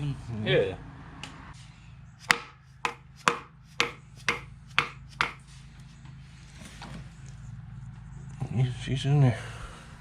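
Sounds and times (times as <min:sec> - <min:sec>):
sharp hammer taps: 0:02.2 - 0:05.4.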